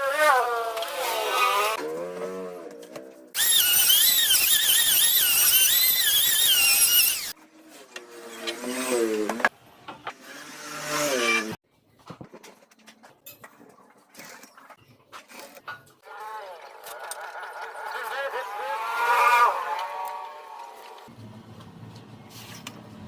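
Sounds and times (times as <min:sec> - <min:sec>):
power tool whining: 0:03.4 - 0:07.4.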